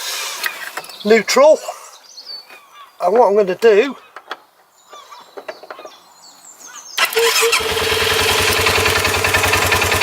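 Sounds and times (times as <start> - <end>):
faint bird chirps: 3.9 - 7.0
starter motor cranking: 7.0 - 10.0
engine idling: 7.1 - 10.0.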